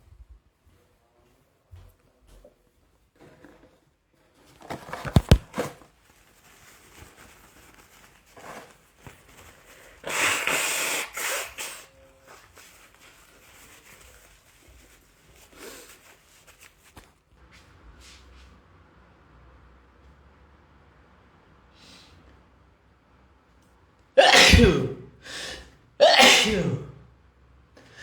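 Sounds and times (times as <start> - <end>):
man sneezing: 24.2 - 27.0.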